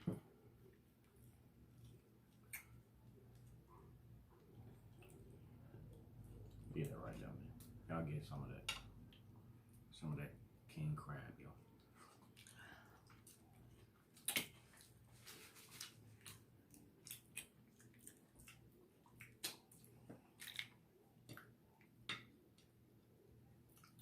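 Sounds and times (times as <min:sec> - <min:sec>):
crab legs cracked and chewed: 0:12.1 - 0:15.0, 0:15.6 - 0:22.7.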